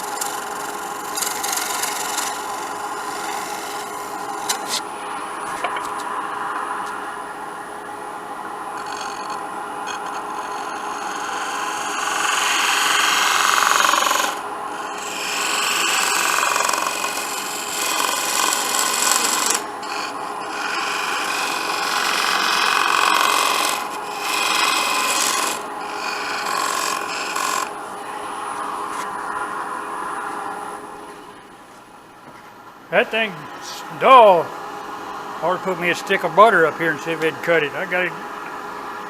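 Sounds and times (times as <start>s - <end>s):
gouge cutting spinning wood: 0.0s - 4.9s, 8.7s - 28.2s
wood lathe motor hum: 0.0s - 7.0s, 8.6s - 29.3s.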